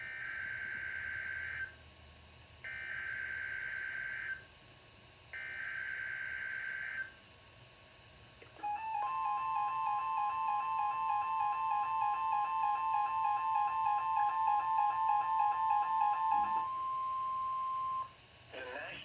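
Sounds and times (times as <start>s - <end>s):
chime-like melody: 8.6s - 18.0s
steady alert tone: 8.6s - 18.1s.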